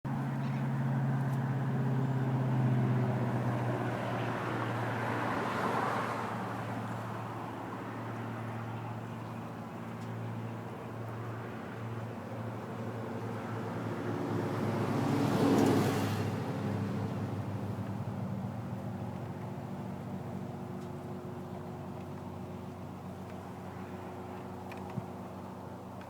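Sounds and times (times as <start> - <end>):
vehicle passing rush: 0.8 - 8.0, 13.2 - 18.8.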